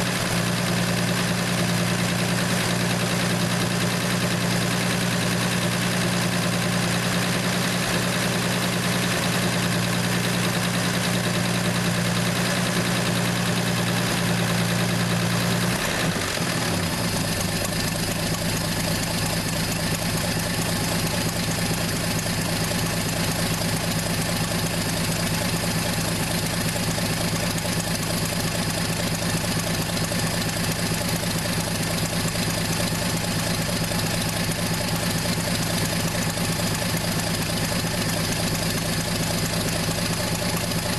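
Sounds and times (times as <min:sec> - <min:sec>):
car engine idling: 0:00.0 - 0:40.9.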